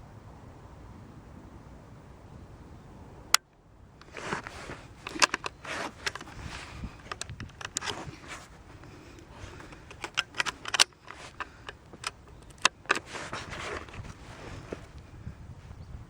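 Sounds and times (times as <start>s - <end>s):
rifle bolt clicking and rattling: 4.0s - 15.0s.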